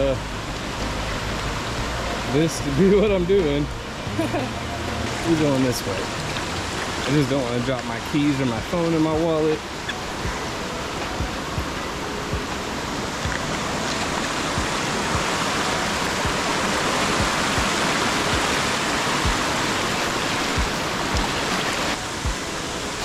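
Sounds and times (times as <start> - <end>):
rushing water: 0.0 - 23.0
soft low thumps: 11.2 - 12.5, 19.2 - 19.6, 20.4 - 21.4.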